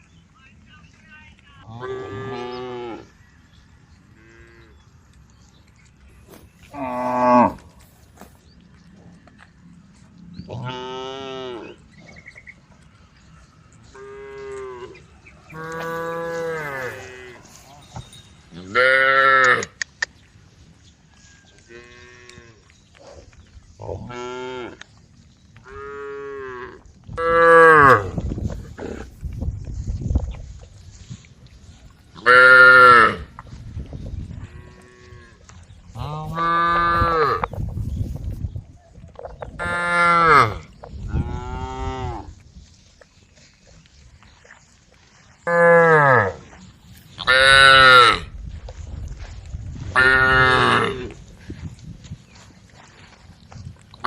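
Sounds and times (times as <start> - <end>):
cows mooing: 1.7 - 3.2, 4.1 - 4.9, 6.3 - 7.9, 10.4 - 12.4, 13.9 - 19.8, 25.6 - 29.1, 32.2 - 33.3, 34.4 - 37.6, 39.6 - 42.3, 45.4 - 46.5, 47.2 - 48.3, 50.0 - 51.2
cattle mooing: 6.7 - 7.9, 13.9 - 19.8, 36.0 - 37.5, 39.6 - 42.3, 50.0 - 51.2.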